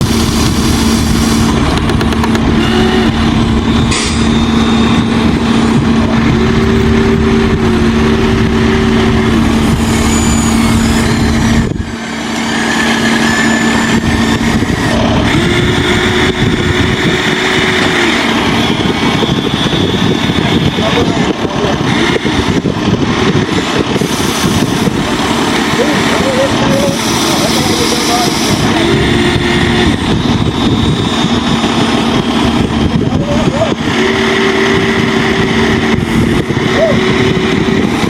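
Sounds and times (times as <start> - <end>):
dense engine-like noise: 0.0 - 38.0
higher motor whine: 0.0 - 38.0
steady motor whine: 0.0 - 38.0.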